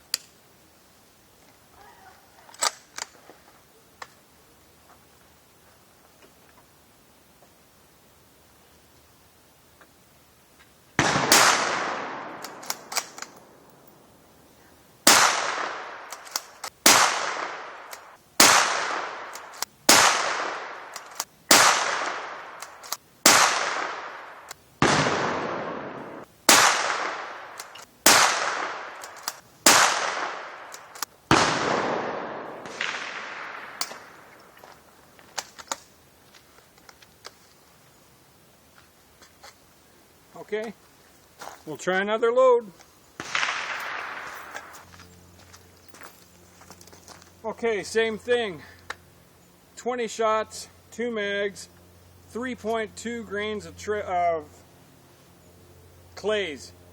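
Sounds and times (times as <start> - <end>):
light rifle bolt clicks: 2.5 - 3.2, 11.3 - 14.0, 15.1 - 24.6, 26.5 - 31.1, 33.7 - 34.5
rifle shots ringing: 11.0 - 14.0, 15.0 - 34.7, 43.2 - 44.9.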